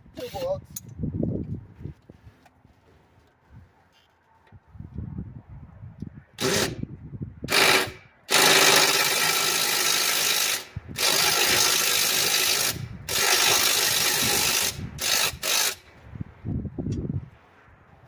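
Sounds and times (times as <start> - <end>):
handheld power tool removing bolts: 6.4 - 6.8, 7.5 - 15.9.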